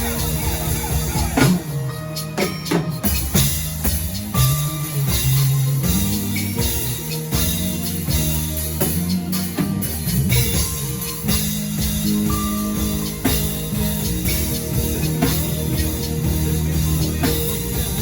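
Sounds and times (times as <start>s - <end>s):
bass guitar: 0.0s - 18.0s
sustained keyboard chords: 0.0s - 18.0s.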